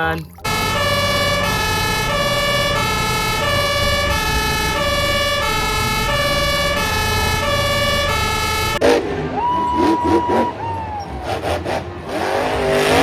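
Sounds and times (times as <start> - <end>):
low rumble: 0.0 - 8.8
two-tone ambulance siren: 0.4 - 11.5.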